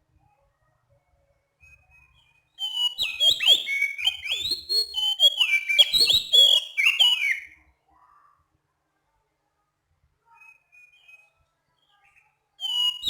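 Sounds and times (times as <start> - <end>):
bird singing whistled notes: 2.1 - 7.6, 10.4 - 13.0.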